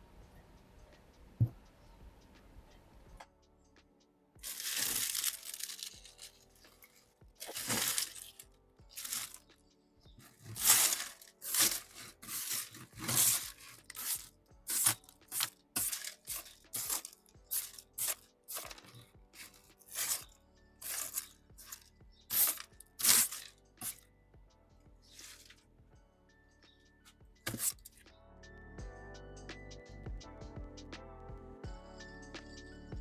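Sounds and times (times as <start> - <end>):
dry leaves crackling and tearing: 4.4 - 6.4, 7.4 - 8.4, 9.0 - 9.4, 10.2 - 20.2, 20.8 - 24.0.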